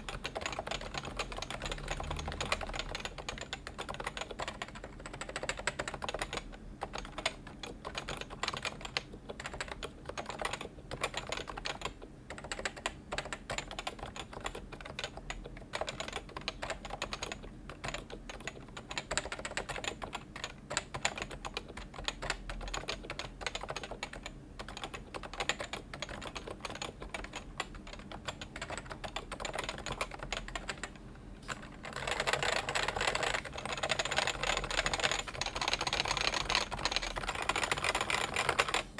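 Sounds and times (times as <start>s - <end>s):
muffled keyboard typing: 0.0s - 38.9s.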